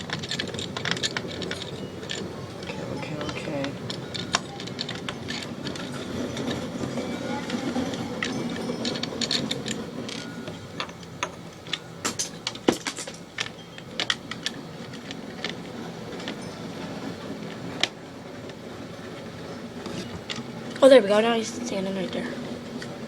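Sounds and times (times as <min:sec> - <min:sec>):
plastic bricks clicking: 0:00.0 - 0:06.6, 0:07.4 - 0:15.6.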